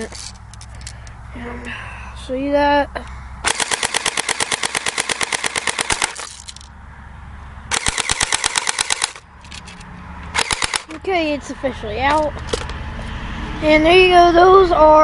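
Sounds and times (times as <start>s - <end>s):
airsoft gun firing bursts: 3.4s - 6.4s, 7.7s - 9.2s, 10.3s - 11.0s.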